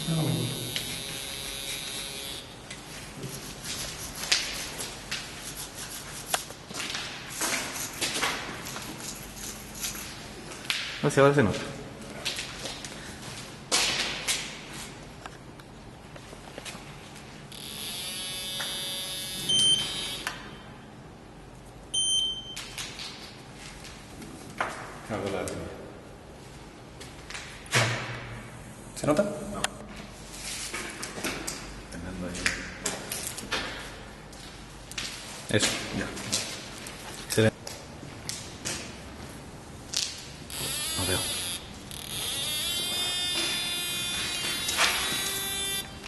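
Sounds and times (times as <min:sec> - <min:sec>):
electronic buzzing of scanner: 0:00.0 - 0:02.6, 0:17.5 - 0:20.3, 0:40.5 - 0:46.0
electric hum: 0:00.0 - 0:02.8, 0:17.1 - 0:20.9, 0:37.8 - 0:46.0
drawing on concrete wall: 0:03.1 - 0:06.6
short high beeps: 0:18.8 - 0:20.2, 0:22.0 - 0:22.6.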